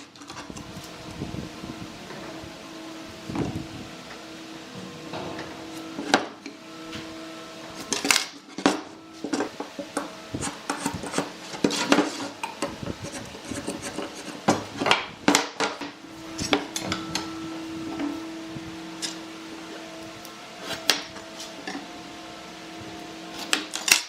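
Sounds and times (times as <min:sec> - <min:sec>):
steady hum: 0:00.0 - 0:24.0
wood and tools clacking: 0:07.8 - 0:17.3.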